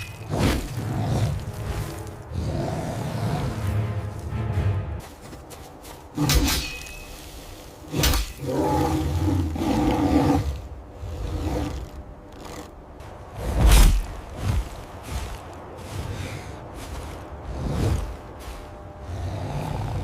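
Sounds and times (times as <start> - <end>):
wolf growling: 7.9 - 12.8.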